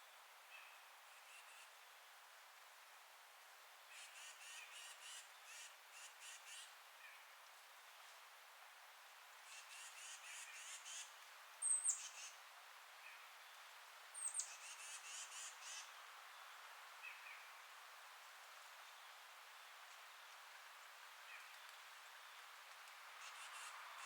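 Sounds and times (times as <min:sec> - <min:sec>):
wind in trees: 0:00.0 - 0:24.0
songbird singing: 0:14.2 - 0:17.6.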